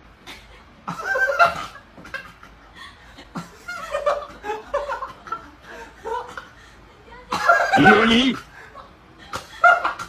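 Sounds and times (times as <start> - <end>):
person chuckling: 7.4 - 10.0.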